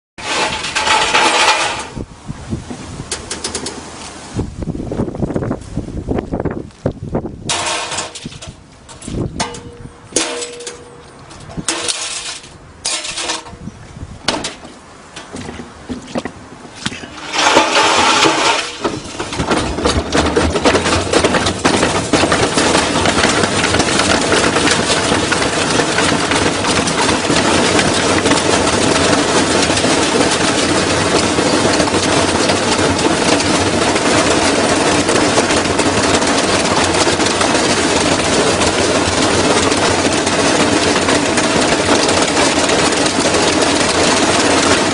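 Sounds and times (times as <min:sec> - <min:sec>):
washing machine running and rattling: 0:00.2 - 0:05.5, 0:07.5 - 0:13.6, 0:14.4 - 0:44.9
scattered knocks: 0:17.4 - 0:44.9.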